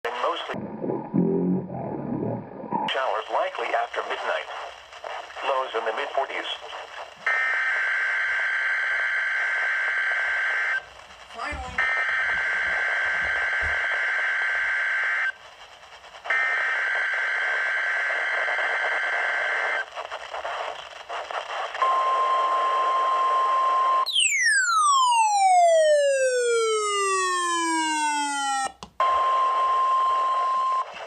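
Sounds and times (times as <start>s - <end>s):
radio hiss: 0.1s - 7.7s, 10.5s - 17.5s, 18.1s - 21.8s
steady warning alarm tone: 11.4s - 14.9s.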